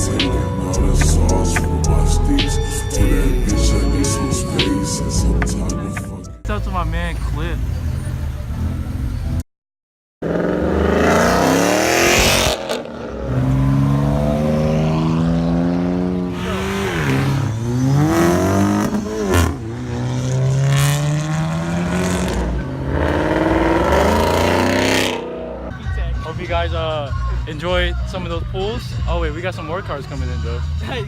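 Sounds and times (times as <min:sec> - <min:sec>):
car engine accelerating: 0:10.2 - 0:25.9.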